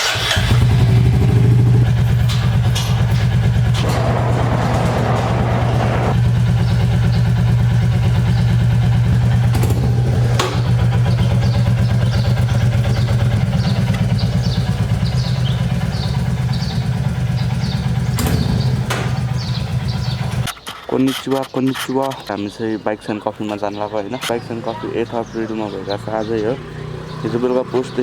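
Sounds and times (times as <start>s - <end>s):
motorcycle engine idling: 0.0s - 20.5s.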